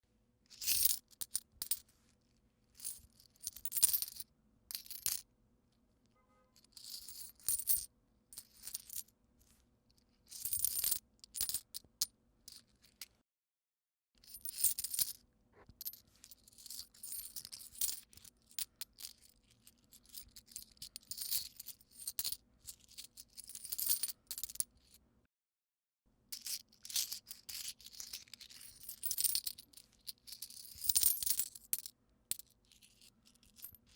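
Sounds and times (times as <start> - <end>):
coins jingling in a hand: 15.8 - 18.1, 20.0 - 24.7, 26.4 - 33.9.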